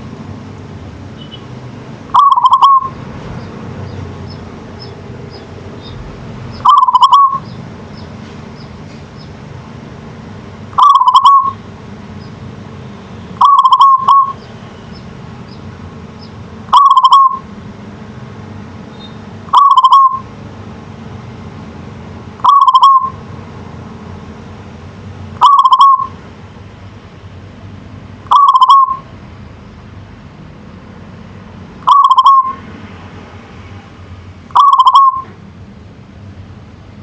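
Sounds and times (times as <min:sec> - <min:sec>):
steady low hum: 0:00.0 - 0:37.0
dove cooing: 0:02.1 - 0:03.0, 0:06.6 - 0:07.5, 0:10.8 - 0:11.6, 0:13.4 - 0:14.4, 0:16.7 - 0:17.4, 0:19.5 - 0:20.2, 0:22.4 - 0:23.2, 0:25.4 - 0:26.2, 0:28.3 - 0:29.0, 0:31.9 - 0:32.6, 0:34.6 - 0:35.3.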